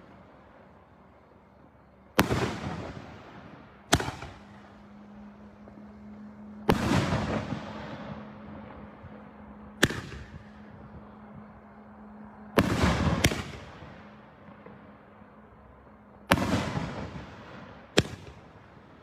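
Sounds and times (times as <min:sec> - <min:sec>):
fireworks bursting with echo: 0:02.2 - 0:05.3, 0:06.0 - 0:11.4, 0:12.5 - 0:14.9, 0:16.3 - 0:18.8.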